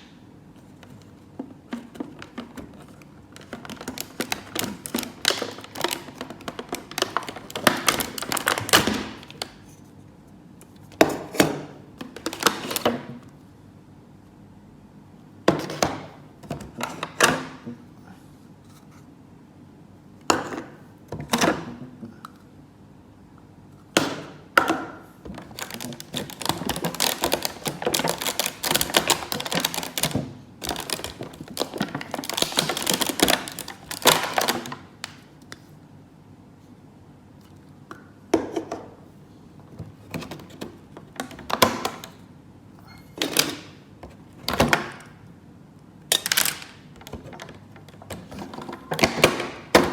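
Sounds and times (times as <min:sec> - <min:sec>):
packaging crinkling and rustling: 0:00.6 - 0:09.7, 0:12.0 - 0:13.0, 0:25.3 - 0:35.3, 0:46.1 - 0:49.9.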